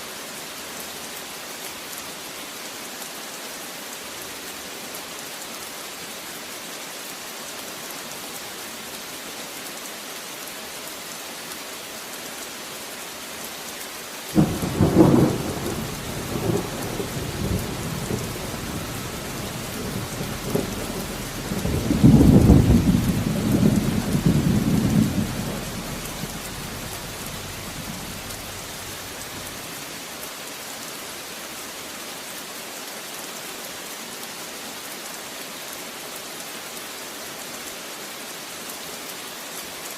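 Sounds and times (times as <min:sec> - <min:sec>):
heavy rain: 0:00.0 - 0:39.9
thunder rumbling: 0:14.4 - 0:29.6.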